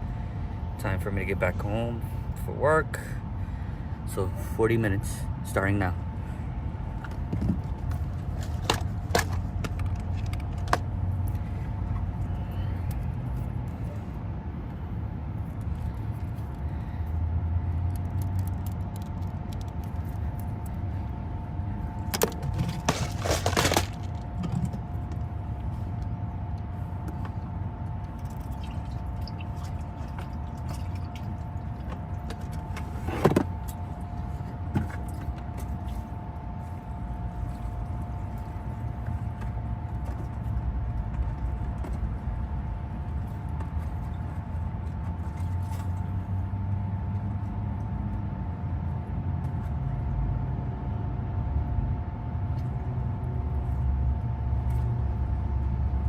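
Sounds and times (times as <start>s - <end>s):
faint steady hum tones: 0.0s - 56.0s.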